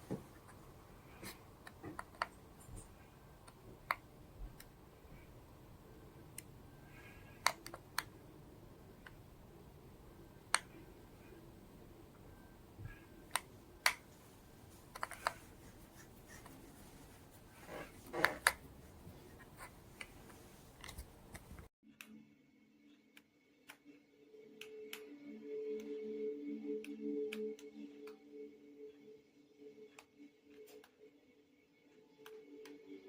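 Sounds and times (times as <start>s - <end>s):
soft steady low tone: 0.0s - 21.5s
faint room hum: 0.0s - 21.7s.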